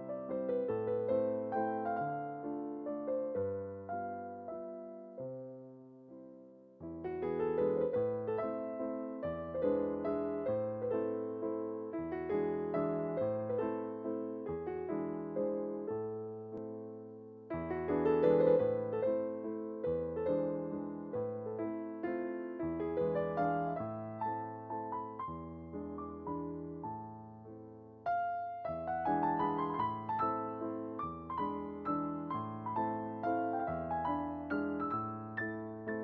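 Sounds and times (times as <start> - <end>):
piano music: 0.0 - 36.0.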